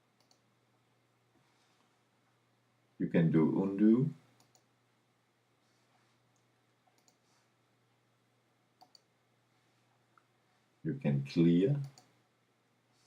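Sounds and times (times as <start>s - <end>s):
computer mouse clicks: 0.2s - 0.5s, 4.4s - 4.7s, 6.3s - 7.3s, 8.8s - 9.1s, 11.8s - 12.2s.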